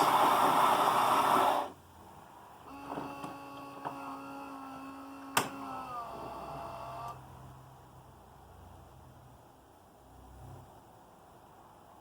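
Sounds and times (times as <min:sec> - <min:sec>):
coffee grinder: 0:00.0 - 0:01.8
motor hum: 0:02.7 - 0:07.3.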